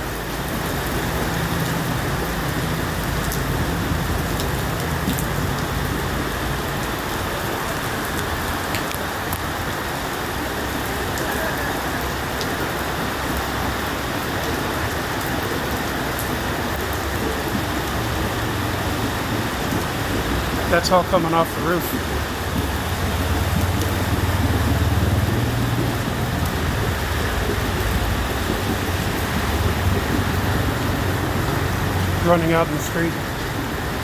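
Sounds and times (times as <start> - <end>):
heavy rain pouring: 0.0 - 34.0
rainwater streaming off roof: 0.0 - 34.0
low rumble: 22.0 - 32.2.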